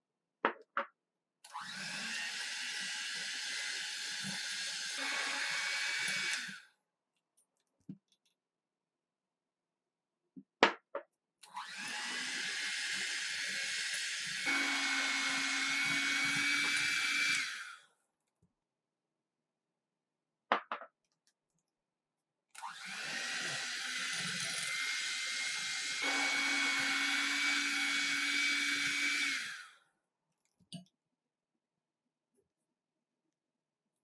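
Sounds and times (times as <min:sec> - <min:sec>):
electric mixer whining: 0:01.5 - 0:06.6, 0:11.6 - 0:17.8, 0:22.6 - 0:29.7.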